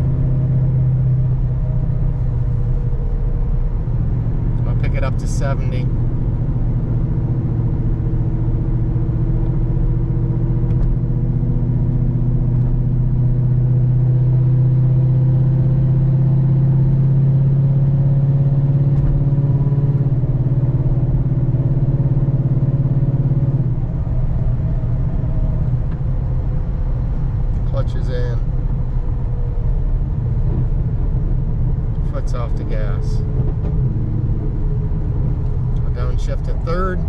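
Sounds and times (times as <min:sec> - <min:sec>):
deep exhaust drone inside car: 0:00.0 - 0:37.0.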